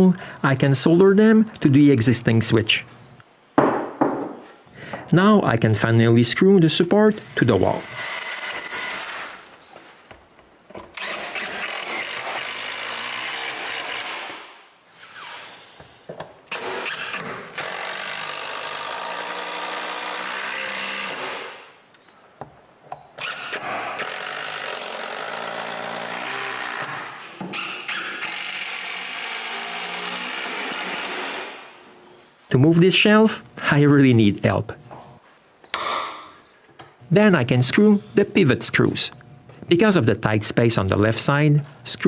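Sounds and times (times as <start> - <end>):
cordless drill running: 7.8 - 9.4, 11.0 - 14.3.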